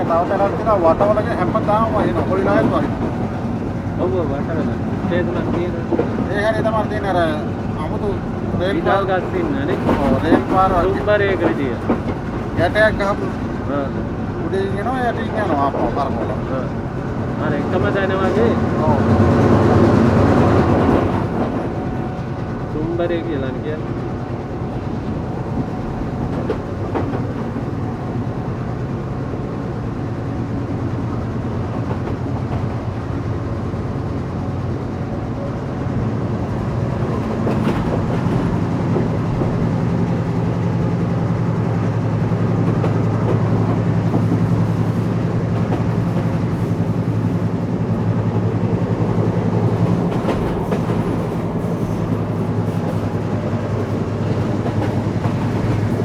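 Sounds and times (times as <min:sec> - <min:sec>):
wheels clicking over rail joints: 0:00.0 - 0:13.7, 0:36.4 - 0:56.0
low locomotive hum: 0:00.0 - 0:56.0
train rumbling along track: 0:00.0 - 0:56.0.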